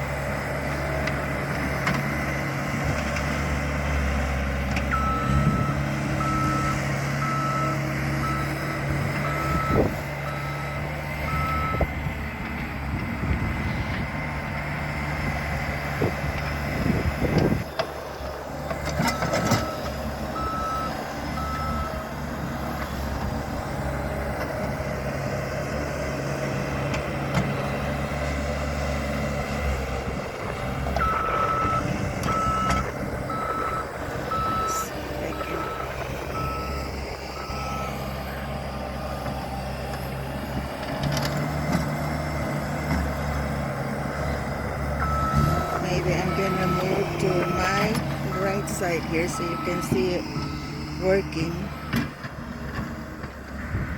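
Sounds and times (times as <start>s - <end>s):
bulldozer engine running: 0.0s - 53.9s
reverse alarm beeping: 31.0s - 38.0s, 45.0s - 52.0s.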